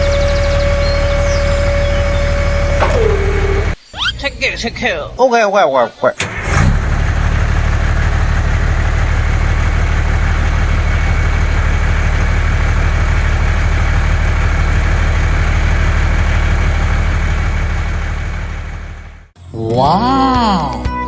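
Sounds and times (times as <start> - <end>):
truck engine idling: 0.0 - 19.4.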